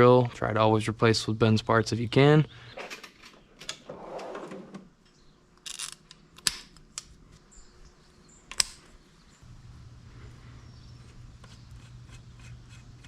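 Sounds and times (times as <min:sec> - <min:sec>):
steady low hum: 0:00.0 - 0:13.0
rustling of parts: 0:02.8 - 0:07.5.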